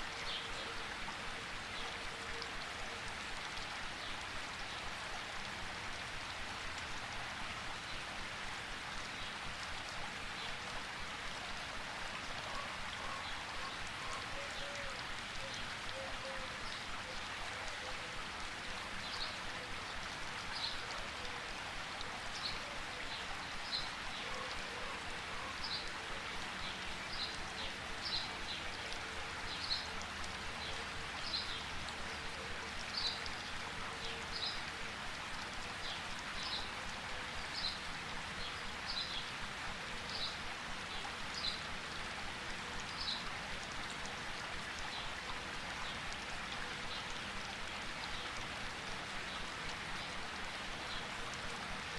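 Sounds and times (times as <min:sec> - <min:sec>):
rain falling: 0:00.0 - 0:51.9.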